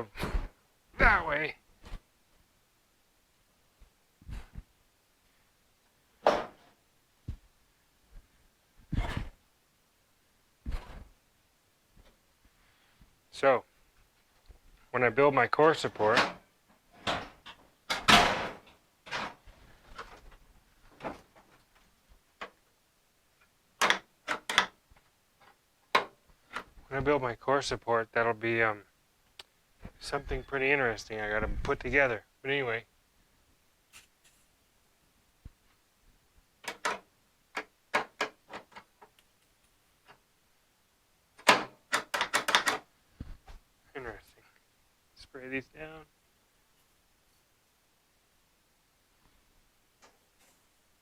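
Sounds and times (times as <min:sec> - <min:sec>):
parts knocking and clunking: 0:06.2 - 0:07.4, 0:17.0 - 0:21.8, 0:23.4 - 0:26.8, 0:36.6 - 0:39.2, 0:41.4 - 0:43.4
tools and parts clicking: 0:23.4 - 0:24.8, 0:41.4 - 0:42.8.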